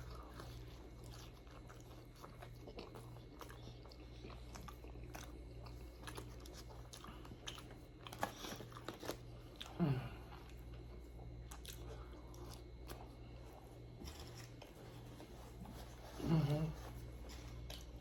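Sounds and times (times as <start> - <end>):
chewing and biting food: 0.0 - 18.0
hum-like voice sound: 9.7 - 10.6, 15.9 - 18.0.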